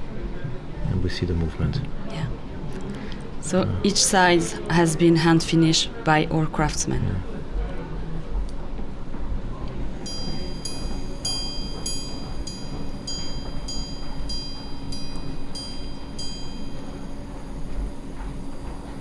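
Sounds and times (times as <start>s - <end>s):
watch chiming gongs: 10.0s - 19.0s.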